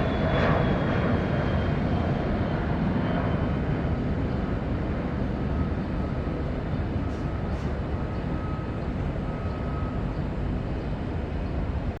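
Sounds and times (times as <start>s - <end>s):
jet engines rumbling: 0.0s - 12.0s.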